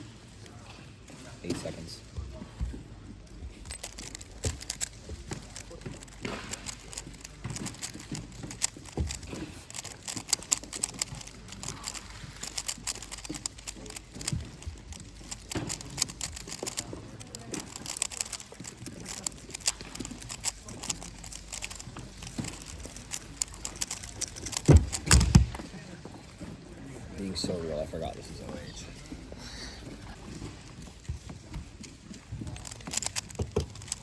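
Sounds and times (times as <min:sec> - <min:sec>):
speed cube clicking: 0:03.4 - 0:25.7, 0:30.2 - 0:34.0.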